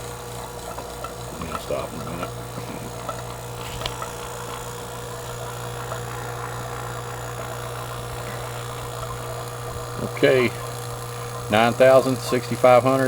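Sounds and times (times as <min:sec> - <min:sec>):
vacuum pump humming: 0:00.0 - 0:13.0.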